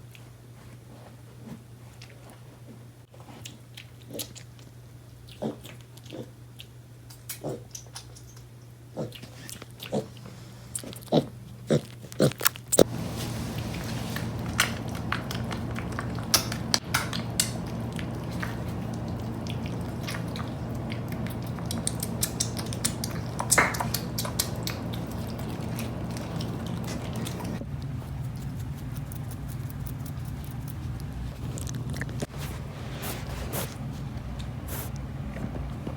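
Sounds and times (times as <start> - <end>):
pig clicking: 5.3 - 10.1, 10.8 - 32.3
steady low hum: 12.8 - 35.9.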